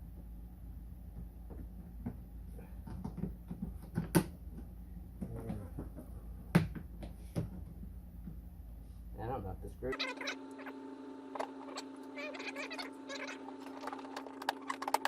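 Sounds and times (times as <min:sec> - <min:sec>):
sharp plastic knocks: 0:02.8 - 0:05.9.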